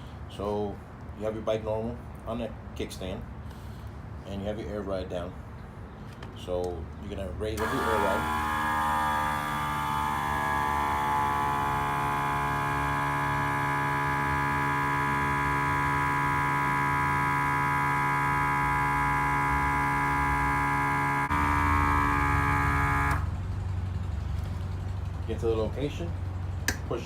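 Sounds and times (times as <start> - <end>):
air compressor electric hum: 7.4 - 23.4
compressor click: 7.6 - 18.4.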